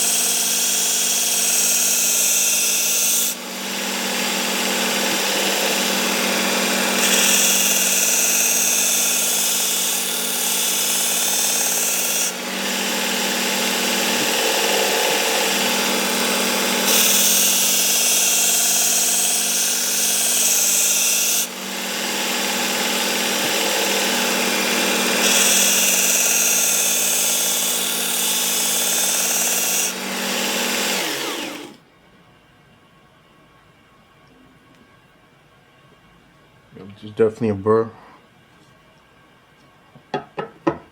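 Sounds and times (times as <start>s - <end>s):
belt sharpener running: 0.0s - 31.8s
motor winding down whine: 10.3s - 31.8s.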